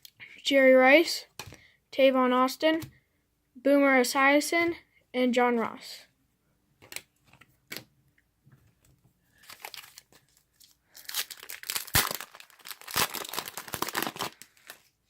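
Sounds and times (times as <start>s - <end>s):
wrapper tearing and crinkling: 9.4s - 14.9s.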